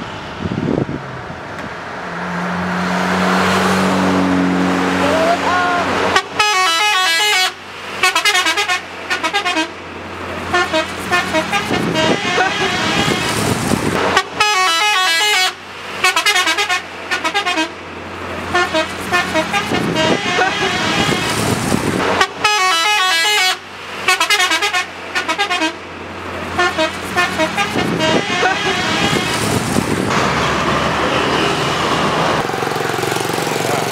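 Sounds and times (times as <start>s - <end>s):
engine hum: 0.0s - 33.9s
bus multi-tone musical horn: 4.1s - 9.8s, 10.4s - 17.8s, 18.4s - 25.9s, 26.5s - 29.6s.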